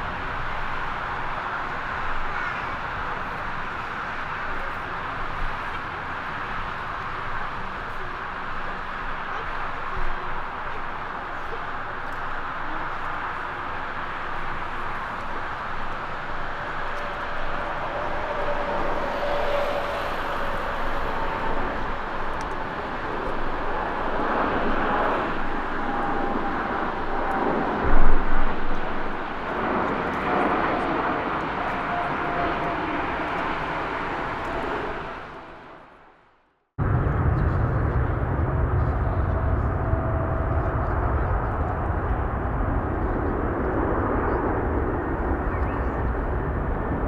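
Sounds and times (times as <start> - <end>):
jet engines running: 0.0 - 47.0
low bump: 36.8 - 43.7.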